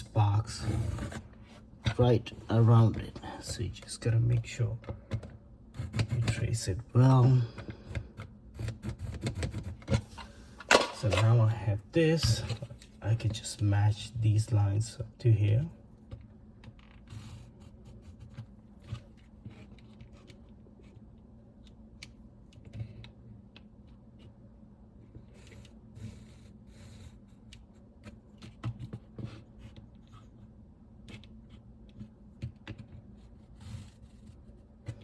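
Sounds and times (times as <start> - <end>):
pencil scraping on drywall: 0.0 - 2.8, 5.7 - 6.6, 7.9 - 10.2, 16.8 - 21.1, 25.0 - 35.0.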